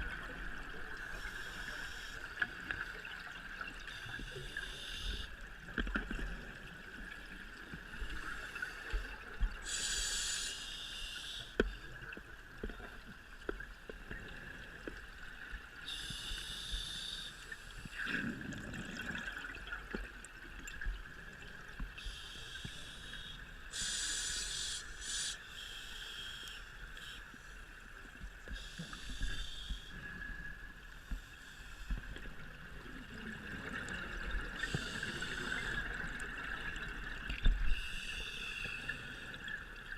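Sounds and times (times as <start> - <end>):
steady regulator hiss: 1.0 - 2.4, 3.9 - 5.4, 8.0 - 11.8, 15.9 - 18.0, 22.0 - 32.2, 34.5 - 36.6, 37.7 - 39.5
exhaled bubbles rushing underwater: 18.0 - 20.1.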